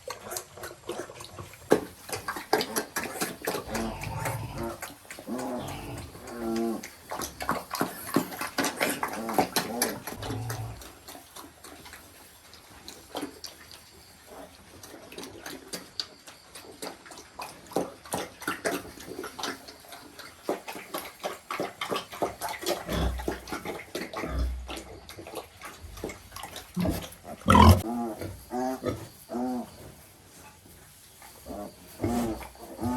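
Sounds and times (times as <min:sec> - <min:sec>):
piglets squealing and grunting: 0:26.8 - 0:29.5.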